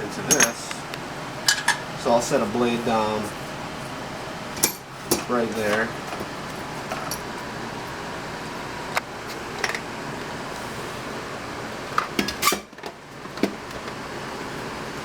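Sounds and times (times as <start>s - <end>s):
steady background hiss: 0.0s - 12.0s.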